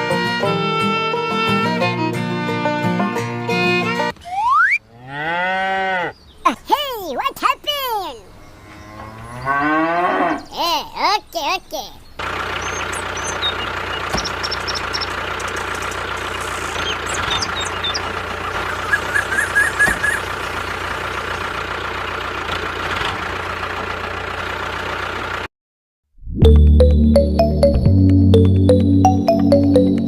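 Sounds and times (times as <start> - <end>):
music: 0.0 - 4.1, 26.3 - 30.0
tractor engine running: 11.9 - 25.5.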